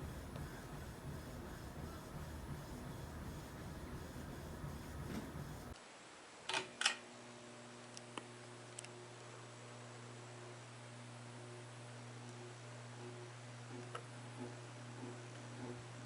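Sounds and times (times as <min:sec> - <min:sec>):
ceiling fan motor humming: 0:00.0 - 0:05.8.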